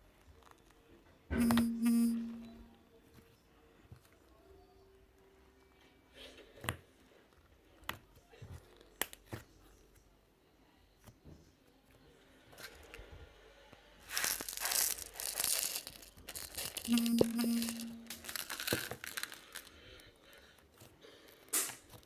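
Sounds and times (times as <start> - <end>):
short low steady tone: 1.4 - 2.7, 16.9 - 18.3
slime crinkling and tearing: 14.0 - 19.9.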